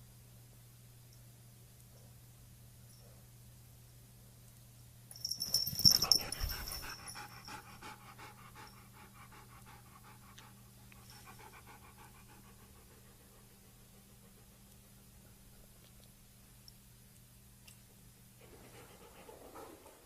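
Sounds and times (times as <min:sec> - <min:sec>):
dog panting rapidly: 0:05.8 - 0:14.7, 0:18.4 - 0:20.0.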